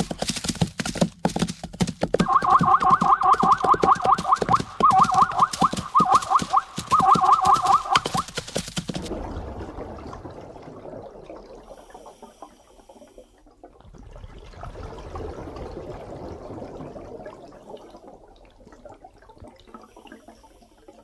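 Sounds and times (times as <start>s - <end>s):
water splashing and trickling: 0.0s - 20.8s
sharp clicks: 2.2s - 9.1s.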